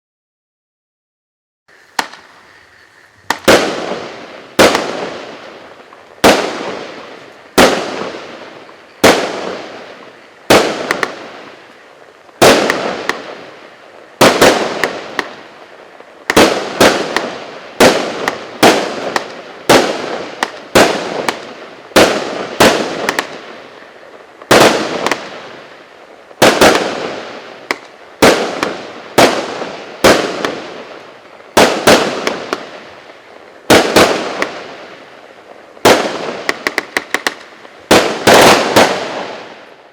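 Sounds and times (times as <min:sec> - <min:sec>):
fuse hiss: 0:01.7 - 0:06.2
firework bangs with crackling: 0:01.7 - 0:39.9.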